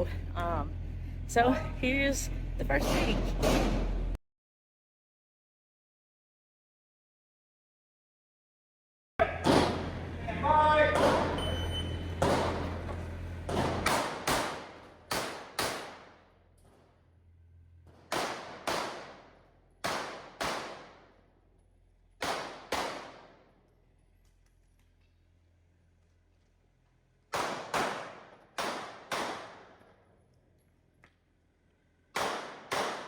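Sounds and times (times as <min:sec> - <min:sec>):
pistol gunshots with echo: 0:13.5 - 0:16.3, 0:18.1 - 0:21.2, 0:22.2 - 0:23.6, 0:27.3 - 0:30.0, 0:32.1 - 0:33.0.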